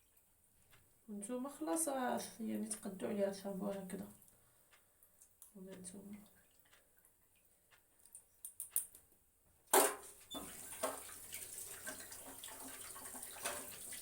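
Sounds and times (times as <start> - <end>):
water running: 1.1 - 4.3, 9.8 - 14.0.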